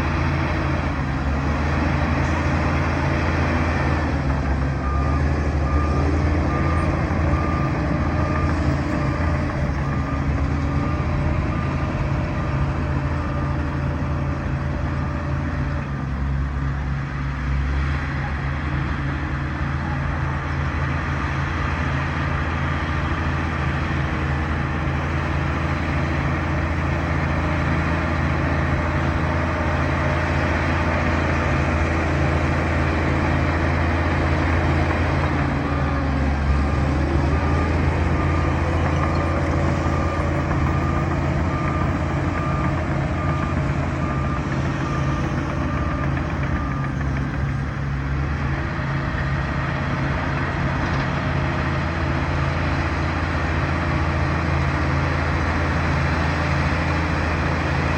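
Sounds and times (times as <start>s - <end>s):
diesel engine running: 0.0s - 57.9s
reversing alarm beeping: 1.9s - 15.8s, 21.0s - 52.5s.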